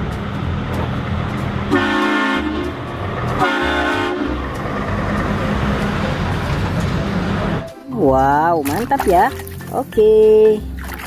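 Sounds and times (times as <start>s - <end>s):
vehicle horn blasts: 1.7s - 2.8s, 3.4s - 4.4s.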